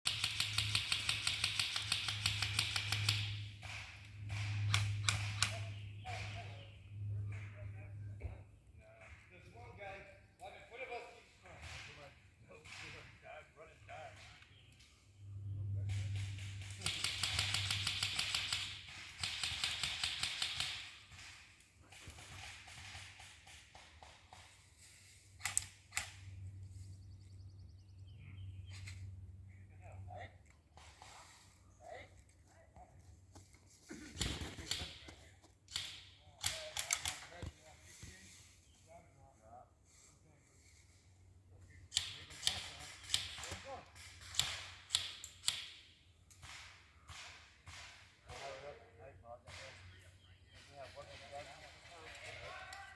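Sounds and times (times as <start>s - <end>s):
airsoft gun firing: 0.1s - 6.4s, 15.9s - 24.4s, 41.9s - 45.8s
sharp cracks: 0.1s - 6.6s, 15.8s - 24.6s, 35.7s - 37.5s, 41.9s - 48.5s.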